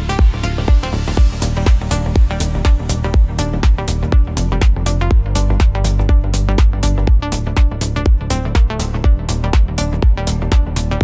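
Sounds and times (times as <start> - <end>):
electronic dance music: 0.0 - 11.0
kick drum beat: 0.0 - 11.0
synth chords: 0.0 - 11.0.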